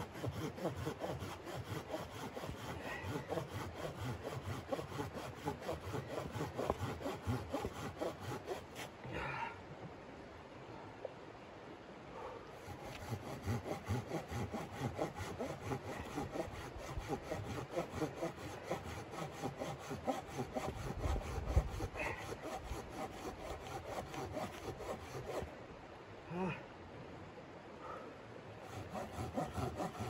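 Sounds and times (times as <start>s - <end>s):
hand saw cutting wood: 0.0s - 8.9s, 12.6s - 25.5s, 28.6s - 30.0s.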